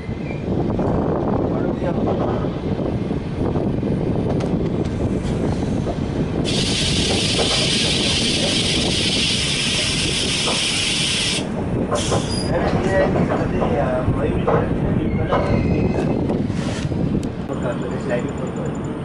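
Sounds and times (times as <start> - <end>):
train rumbling on rails: 0.0 - 19.0
loud hiss: 6.4 - 11.5.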